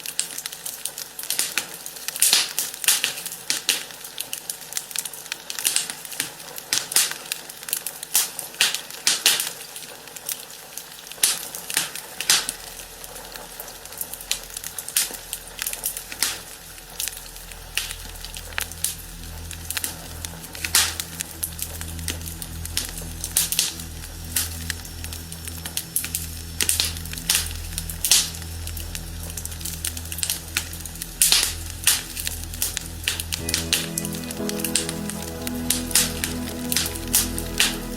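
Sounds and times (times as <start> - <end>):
low steady hum: 12.6 - 37.9
fireplace fire crackling: 13.3 - 37.9.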